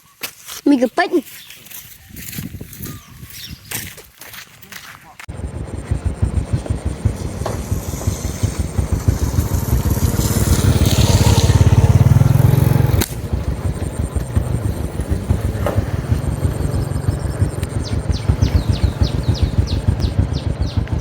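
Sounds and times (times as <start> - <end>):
small engine puttering: 5.3 - 21.0.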